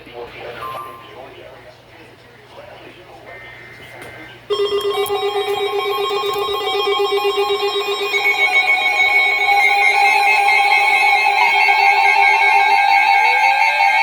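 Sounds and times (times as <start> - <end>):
harsh steady two-tone alert signal: 4.5 - 14.0.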